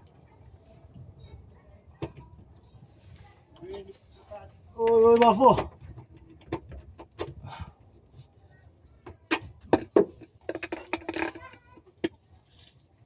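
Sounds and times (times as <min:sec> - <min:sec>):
hand tools knocking and clicking: 0:09.1 - 0:12.2.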